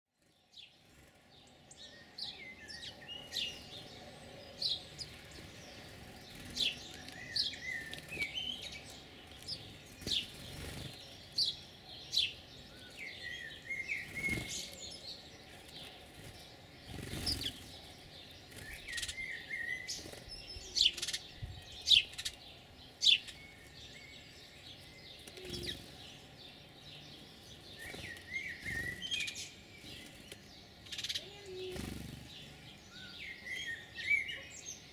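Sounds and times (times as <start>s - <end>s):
songbirds chirping: 0.1s - 34.9s
birds warbling: 0.5s - 34.9s.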